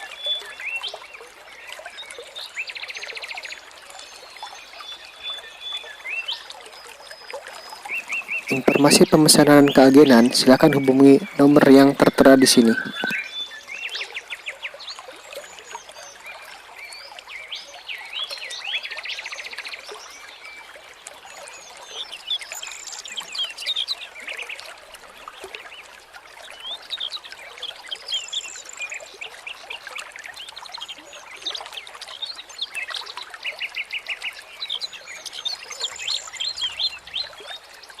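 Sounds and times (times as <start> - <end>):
small birds chirping and singing: 4.0 - 20.4.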